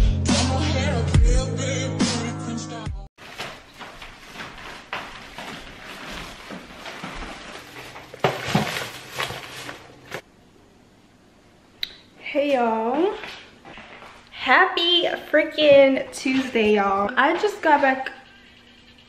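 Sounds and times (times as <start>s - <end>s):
clattering and knocking handling noises: 6.0s - 10.2s.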